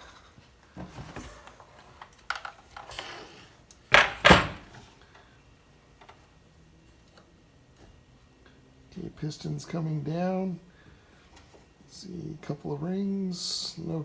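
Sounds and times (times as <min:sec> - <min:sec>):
metal tools knocking and rattling: 0:03.9 - 0:04.8.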